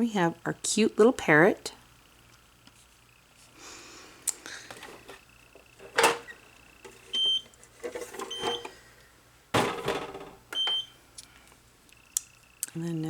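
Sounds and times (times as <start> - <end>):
handling sounds: 4.5 - 8.8.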